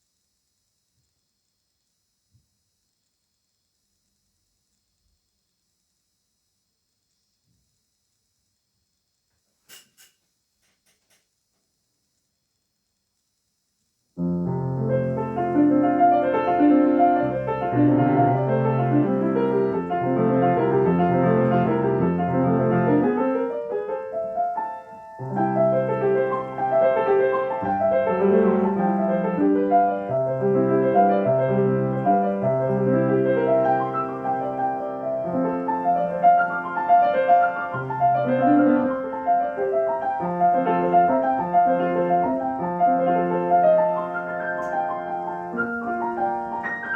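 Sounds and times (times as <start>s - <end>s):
solo classical piano: 14.2s - 46.9s.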